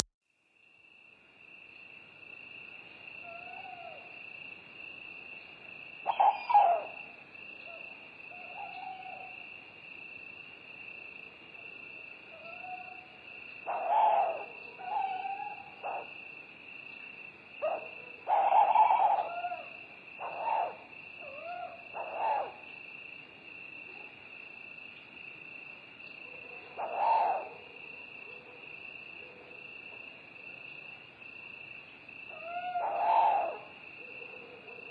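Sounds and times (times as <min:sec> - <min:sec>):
owl hoots: 0:06.0 - 0:07.0, 0:07.7 - 0:09.5, 0:12.3 - 0:13.1, 0:13.7 - 0:16.2, 0:17.6 - 0:22.7, 0:26.7 - 0:27.8, 0:32.3 - 0:34.9.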